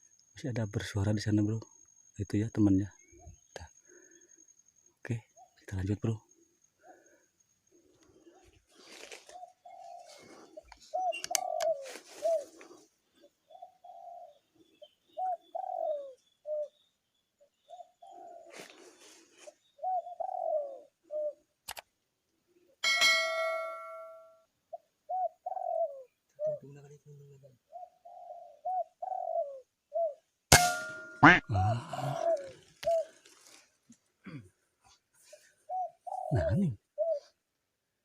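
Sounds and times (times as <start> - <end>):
dove cooing: 9.3 - 16.8, 19.7 - 21.4, 24.7 - 30.2, 30.9 - 33.3, 35.3 - 37.4
sharp metallic crack: 30.5 - 31.4.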